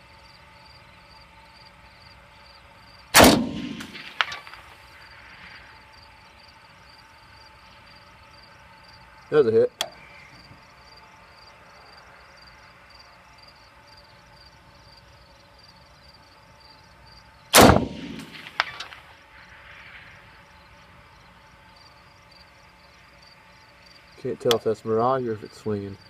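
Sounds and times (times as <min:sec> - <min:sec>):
insects chirping: 0:00.0 - 0:26.0
rifle shot with echo: 0:03.1 - 0:04.9, 0:17.5 - 0:19.1.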